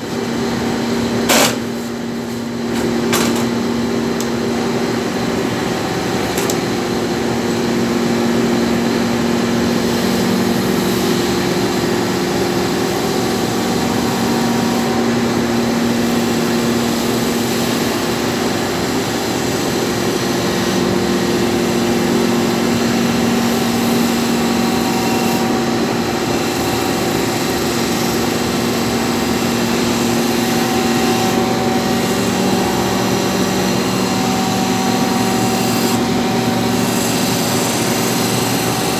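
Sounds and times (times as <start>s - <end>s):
grinder humming: 0.0s - 9.5s.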